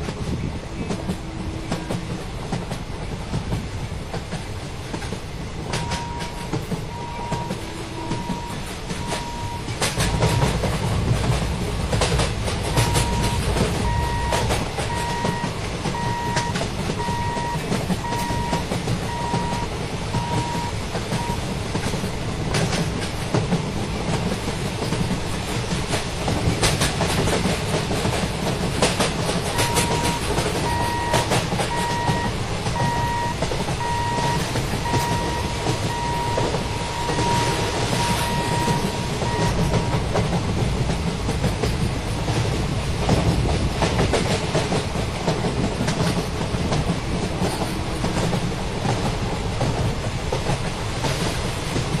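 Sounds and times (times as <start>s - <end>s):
train rumbling past: 0.0s - 52.0s
wheels clicking over rail joints: 0.0s - 52.0s
repeated beeping tone: 5.7s - 10.6s, 12.8s - 21.4s, 29.5s - 40.0s.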